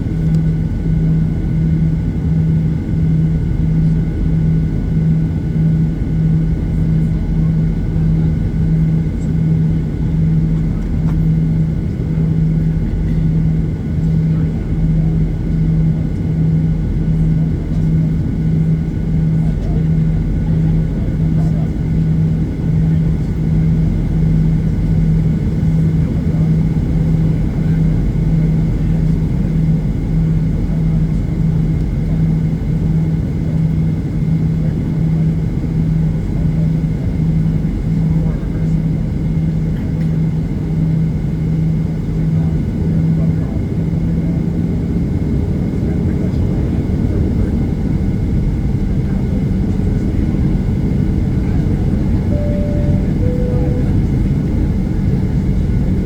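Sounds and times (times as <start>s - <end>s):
jet engines low rumble: 0.0s - 56.0s
jet engines idling: 45.2s - 56.0s
pulsing hum: 52.1s - 56.0s.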